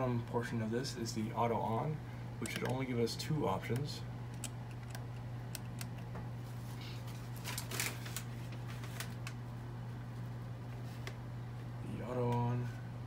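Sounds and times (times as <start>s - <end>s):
steady low hum: 0.0s - 13.0s
light clicks and handling noise: 2.4s - 3.0s.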